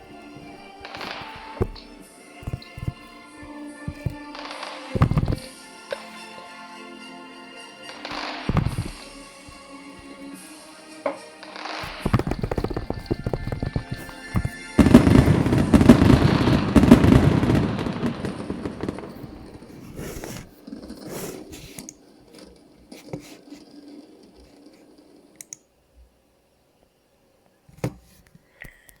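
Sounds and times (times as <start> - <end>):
fireworks bangs and crackling: 0.0 - 6.4, 7.6 - 21.8.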